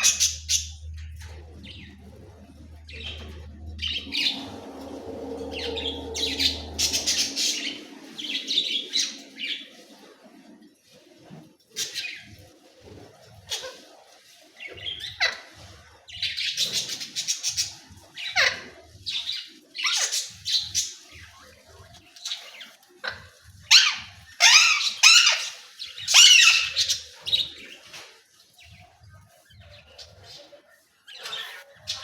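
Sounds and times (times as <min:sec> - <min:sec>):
parrot squawking and chattering: 0:00.0 - 0:00.8, 0:23.0 - 0:27.2.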